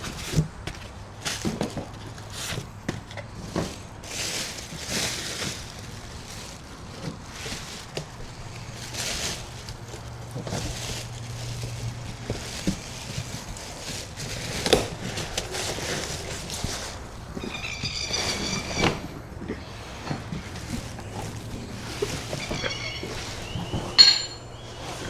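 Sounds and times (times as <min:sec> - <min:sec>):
packaging rustling: 0:00.0 - 0:19.1.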